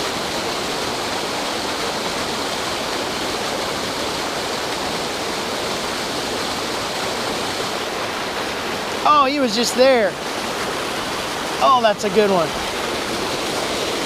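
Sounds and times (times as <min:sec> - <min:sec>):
water rushing over waterfall: 0:00.0 - 0:14.0.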